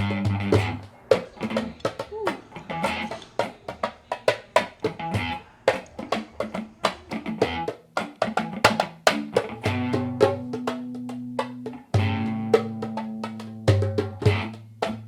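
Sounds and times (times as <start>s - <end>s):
music with percussive hits: 0.0s - 15.0s.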